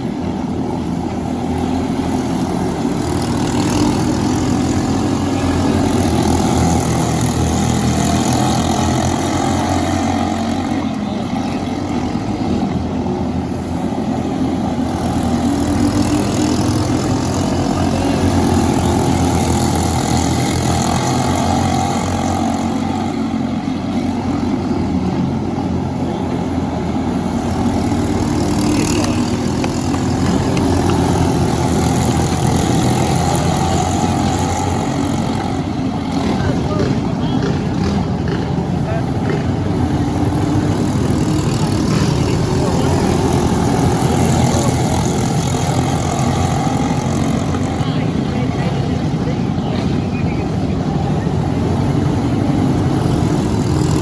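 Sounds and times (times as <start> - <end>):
kart engines droning: 0.0 - 54.0.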